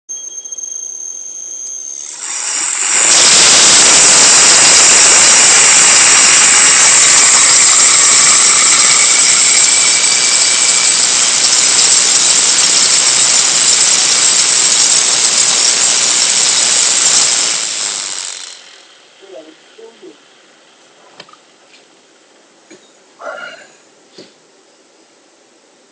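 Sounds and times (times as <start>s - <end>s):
steady high-pitched tones: 0.1s - 12.0s
electric motor whirring: 0.2s - 19.4s.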